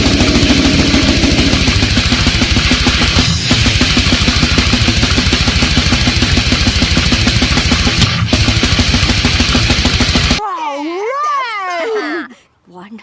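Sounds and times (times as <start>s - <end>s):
heavy metal music: 0.0s - 10.4s.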